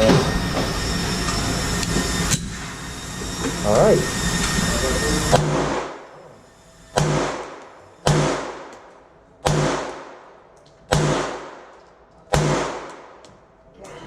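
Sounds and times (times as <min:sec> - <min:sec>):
gunshots echoing: 0:05.4 - 0:06.1, 0:06.9 - 0:13.2.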